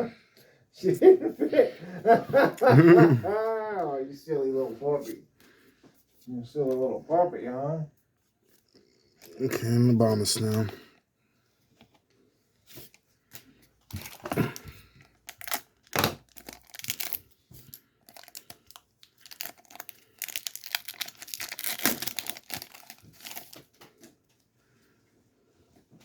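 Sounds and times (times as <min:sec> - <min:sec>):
foil wrapper tearing and crinkling: 0:13.9 - 0:24.1.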